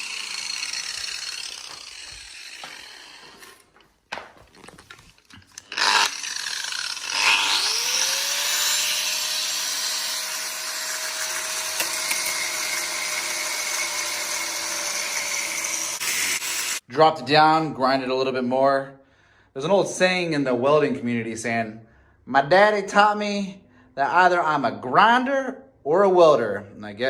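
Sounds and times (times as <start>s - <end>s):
angle grinder grinding wood: 0.0s - 16.8s.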